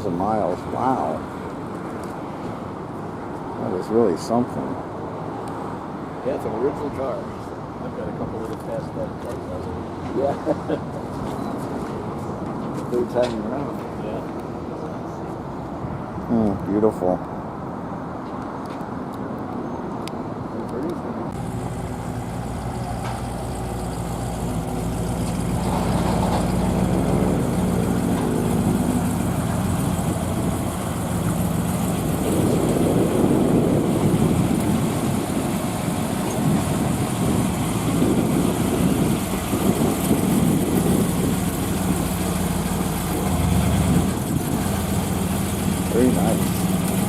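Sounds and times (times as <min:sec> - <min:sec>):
car engine idling: 0:21.4 - 0:47.0.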